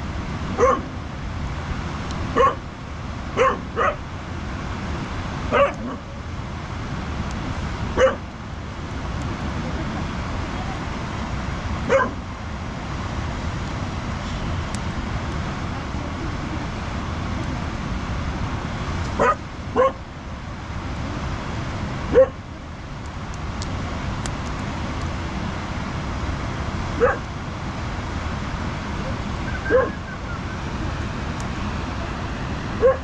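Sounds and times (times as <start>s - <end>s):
steady noisy rush: 0.0s - 33.0s
dog barking: 0.6s - 0.9s, 2.4s - 2.6s, 3.4s - 4.0s, 5.5s - 6.1s, 8.0s - 8.2s, 11.9s - 12.2s, 19.2s - 20.0s, 22.1s - 22.4s, 27.0s - 27.3s, 29.6s - 30.0s, 32.8s - 33.0s.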